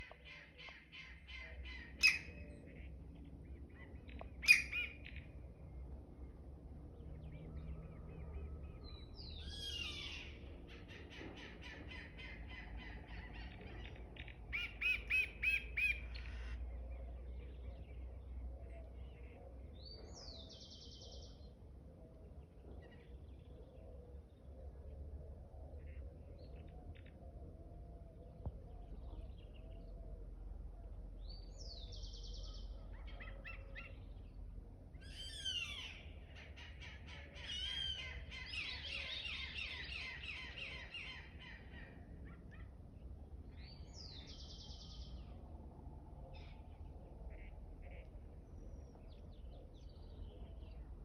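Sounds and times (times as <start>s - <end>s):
faint low rumble: 0.0s - 14.6s, 15.3s - 51.0s
wild birds calling and singing: 0.0s - 51.0s
bird trill: 1.0s - 2.5s, 4.4s - 5.2s.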